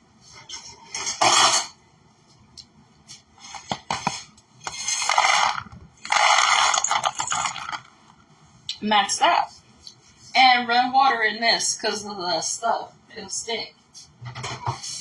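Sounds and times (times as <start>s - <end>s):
knife and pan scraping: 3.5s - 7.9s.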